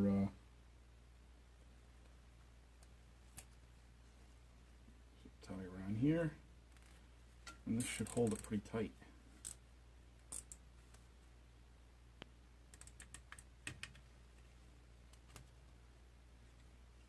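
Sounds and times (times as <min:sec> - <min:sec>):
faint low hum: 0:00.0 - 0:17.0.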